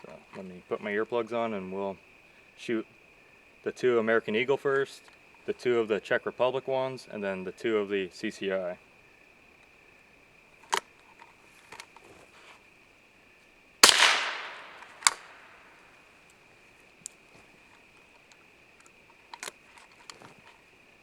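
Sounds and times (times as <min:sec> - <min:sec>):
gun handling clicks: 0:10.6 - 0:12.1, 0:13.8 - 0:16.4, 0:18.2 - 0:20.3
gunshot crack: 0:13.8 - 0:15.7.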